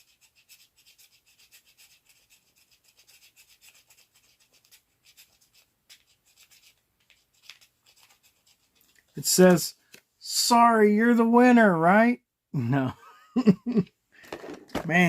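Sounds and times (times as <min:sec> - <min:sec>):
scratch-off card being scratched: 0:00.0 - 0:09.6.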